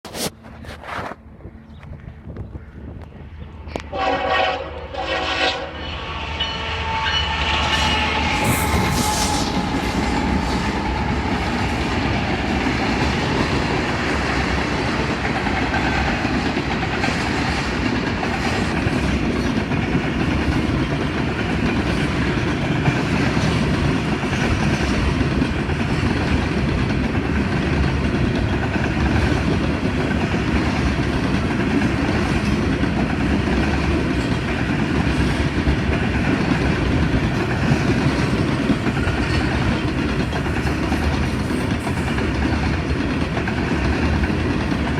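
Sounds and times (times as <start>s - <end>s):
freight train wheels rumbling: 0.1s - 44.9s
wheels clicking over rail joints: 9.5s - 44.9s.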